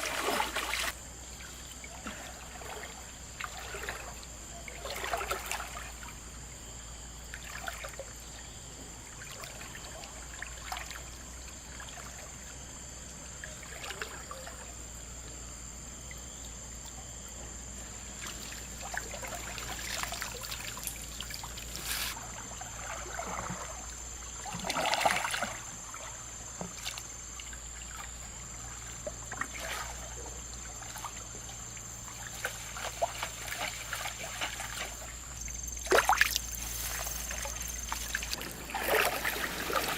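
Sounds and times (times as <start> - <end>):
river water trickling: 0.0 - 39.9
sharp water splashes: 32.1 - 39.9.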